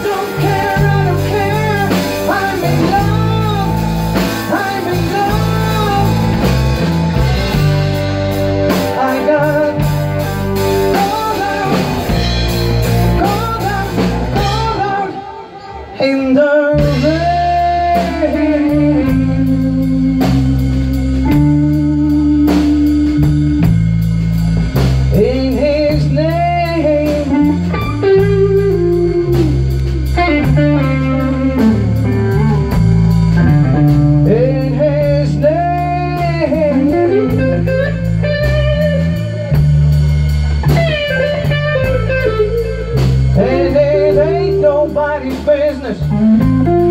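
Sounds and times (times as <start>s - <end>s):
bass and drums: 0.0s - 15.4s, 16.0s - 46.9s
lead guitar with bent notes: 0.0s - 46.9s
slow blues band playing: 0.0s - 46.9s.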